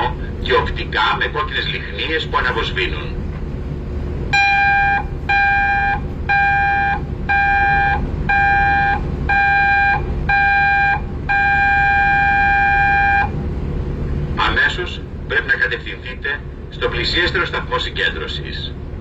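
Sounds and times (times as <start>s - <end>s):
long alarm tone: 4.3s - 13.4s
short high alarm beeps: 4.4s - 13.3s.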